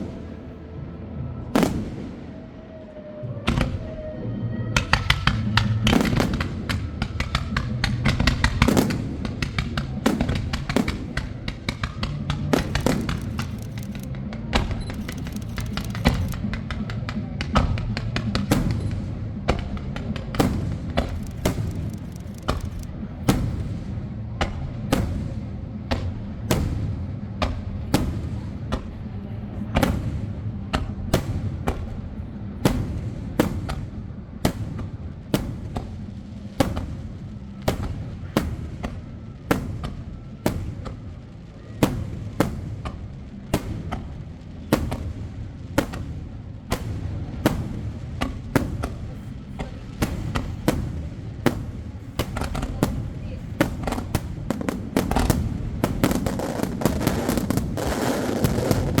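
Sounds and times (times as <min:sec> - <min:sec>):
continuous low rumble: 0:00.0 - 0:59.0
fireworks bangs: 0:01.6 - 0:02.8, 0:04.8 - 0:59.0.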